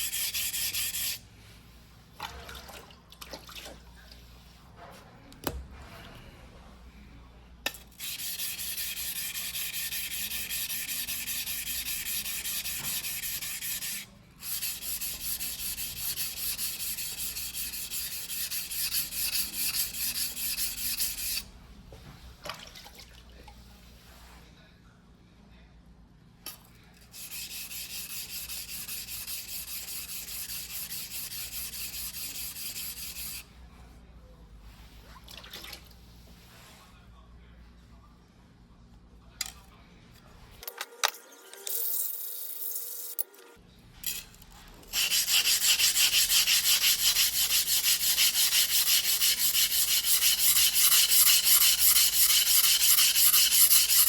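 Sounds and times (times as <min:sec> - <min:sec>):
blade scraping on whetstone: 0:00.0 - 0:01.2, 0:07.9 - 0:21.4, 0:27.2 - 0:33.4, 0:44.9 - 0:54.0.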